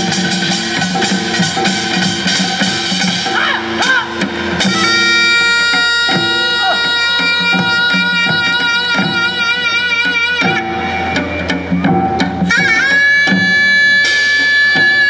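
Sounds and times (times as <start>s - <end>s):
drum strokes: 0.0s - 15.0s
wind instrument long wavering note: 4.6s - 15.0s.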